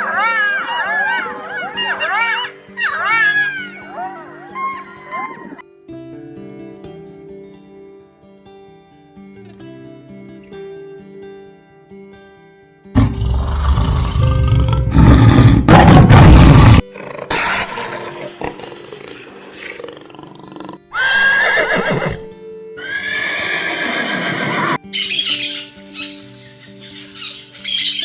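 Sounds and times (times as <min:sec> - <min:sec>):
animal calls: 0:00.0 - 0:05.6, 0:22.9 - 0:28.0
background music: 0:00.0 - 0:28.0.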